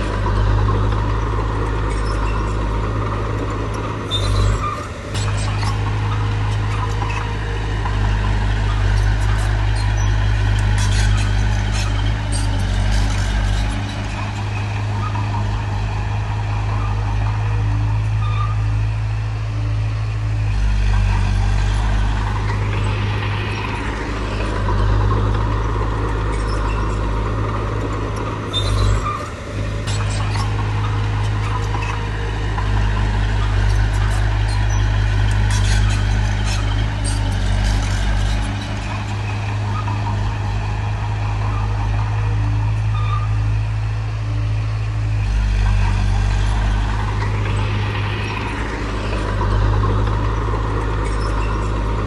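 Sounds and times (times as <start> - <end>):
bulldozer diesel engine running: 0.0 - 52.0.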